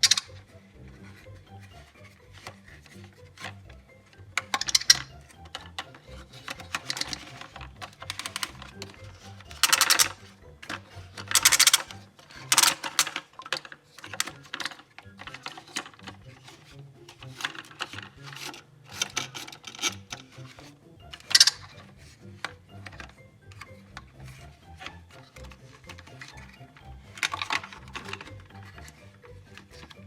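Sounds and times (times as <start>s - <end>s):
plastic toys clicking and clattering: 0.0s - 30.0s.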